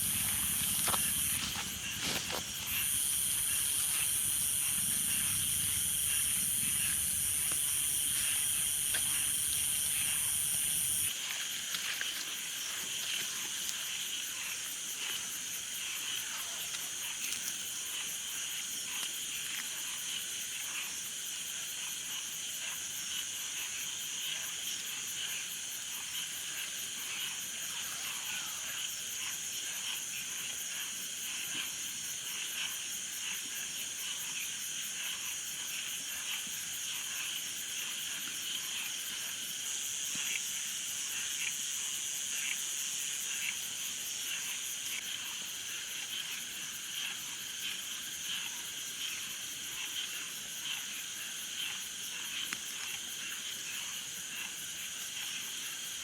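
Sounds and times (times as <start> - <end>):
frogs croaking: 0.0 - 56.0
high-pitched hiss with low rumble: 0.0 - 56.0
night insects chirping: 0.0 - 56.0
faint ticks: 40.0 - 49.2.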